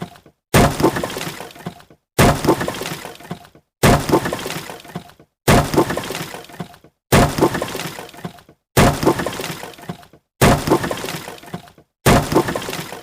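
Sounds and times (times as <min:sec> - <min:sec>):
wood breaking with crack and crash: 0:00.2 - 0:13.0.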